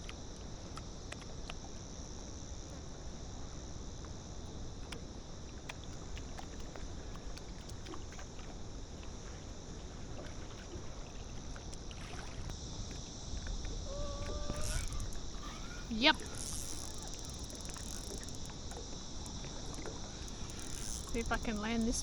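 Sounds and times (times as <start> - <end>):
small sharp ticks: 0.0 - 1.7, 4.0 - 8.4, 11.6 - 22.0
steady high hiss: 12.6 - 19.3, 20.0 - 22.0.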